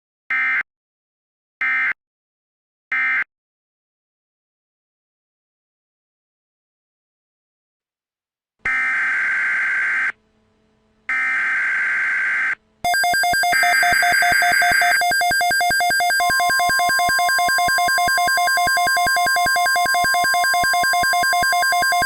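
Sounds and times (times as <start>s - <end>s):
electronic data warble: 12.9s - 22.0s.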